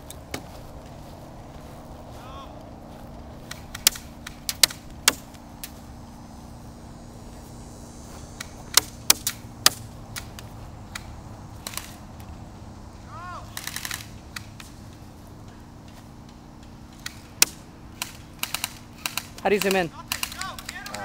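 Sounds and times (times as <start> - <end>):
airsoft gun shots: 3.5 - 5.8, 8.4 - 12.0, 13.4 - 14.8, 17.0 - 21.0.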